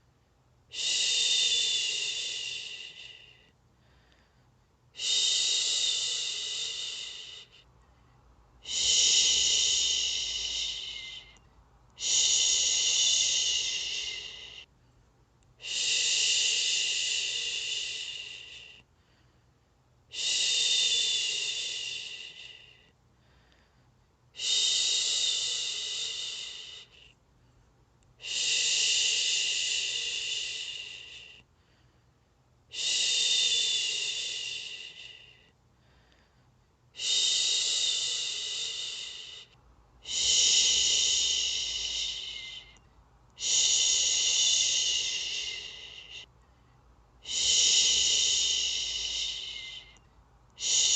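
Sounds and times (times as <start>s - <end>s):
person shushing: 8.6s - 11.4s, 12.0s - 14.6s, 40.0s - 42.8s, 43.4s - 46.3s, 47.2s - 50.0s, 50.6s - 50.9s.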